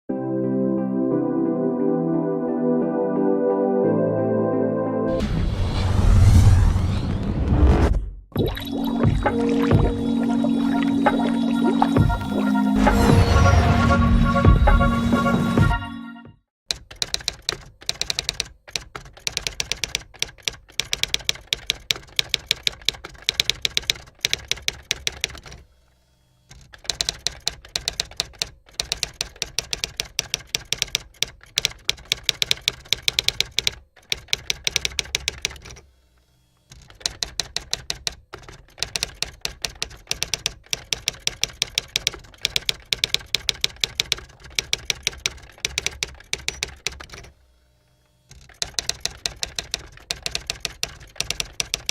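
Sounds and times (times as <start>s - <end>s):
typewriter key clicks: 16.7s - 25.6s, 26.5s - 35.8s, 36.7s - 47.3s, 48.3s - 51.9s.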